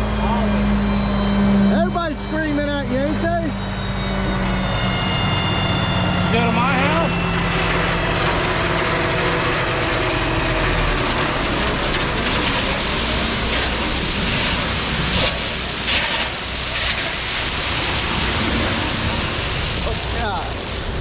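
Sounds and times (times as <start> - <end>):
dump truck engine running: 0.0 - 21.0
hissy surges: 13.4 - 21.0.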